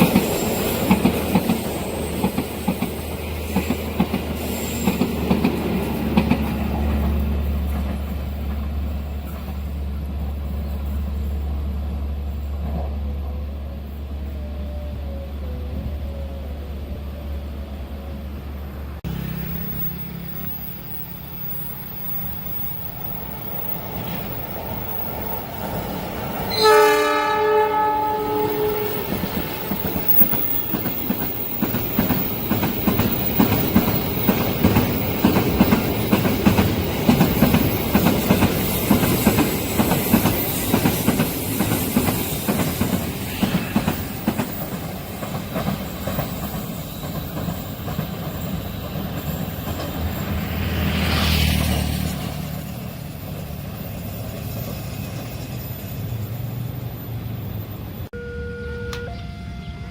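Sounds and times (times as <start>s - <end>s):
train wheels clattering: 0.0s - 10.6s, 28.2s - 56.2s
train air horn: 26.4s - 30.4s, 58.1s - 59.9s.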